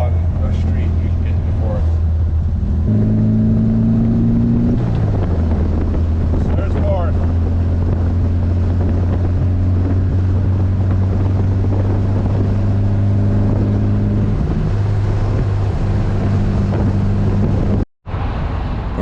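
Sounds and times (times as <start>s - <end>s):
car engine running: 0.0s - 17.8s.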